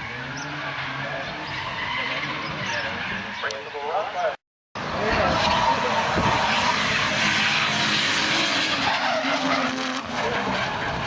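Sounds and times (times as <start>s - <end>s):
car engine running hard: 4.8s - 11.0s
tyres screeching: 6.4s - 10.8s.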